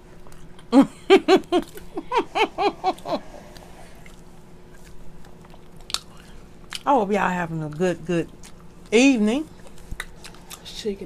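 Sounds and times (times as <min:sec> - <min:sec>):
person laughing: 0:00.7 - 0:03.5.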